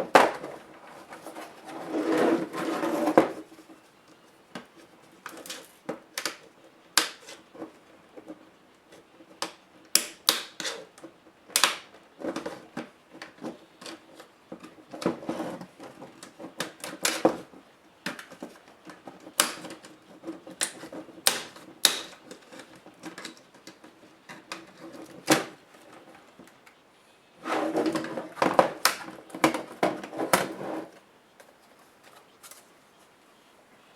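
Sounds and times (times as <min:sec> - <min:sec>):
scraping: 0:00.0 - 0:03.8, 0:27.4 - 0:31.0.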